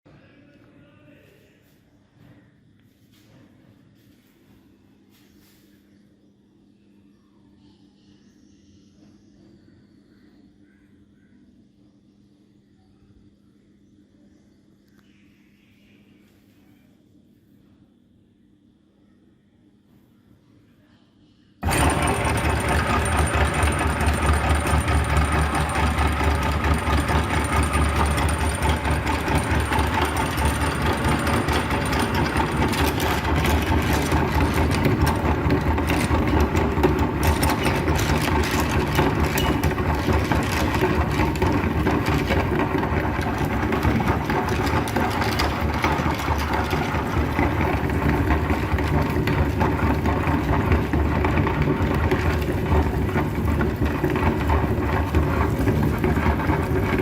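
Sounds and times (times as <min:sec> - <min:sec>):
electric meat grinder running: 0:21.6 - 0:57.0.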